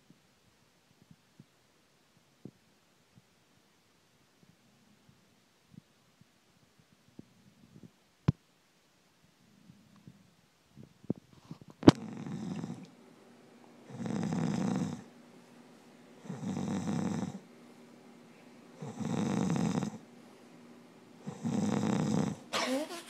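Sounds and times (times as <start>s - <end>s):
man snoring: 12.0s - 12.9s, 13.9s - 15.1s, 16.2s - 17.4s, 18.8s - 20.0s, 21.2s - 22.5s.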